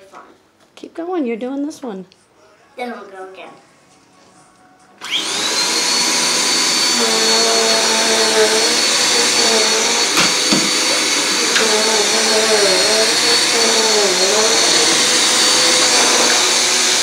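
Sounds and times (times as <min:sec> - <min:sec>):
vacuum cleaner motor running: 0:05.0 - 0:17.0.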